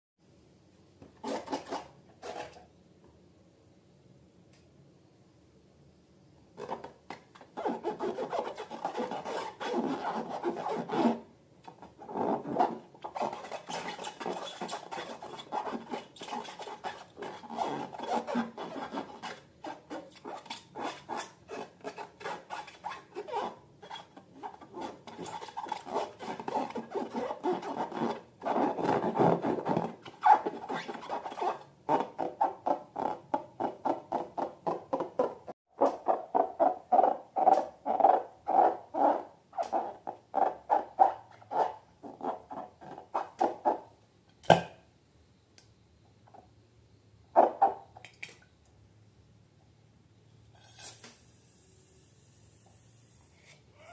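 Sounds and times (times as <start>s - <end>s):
hands rubbing balloons and slime: 7.6s - 11.2s.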